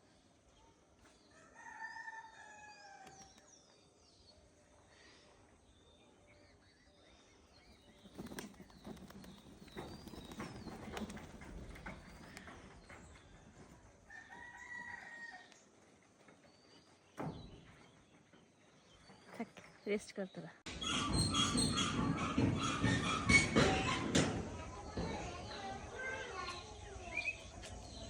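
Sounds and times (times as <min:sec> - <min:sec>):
faint rustling and clattering: 0:07.7 - 0:20.2
rooster crowing: 0:14.1 - 0:15.4.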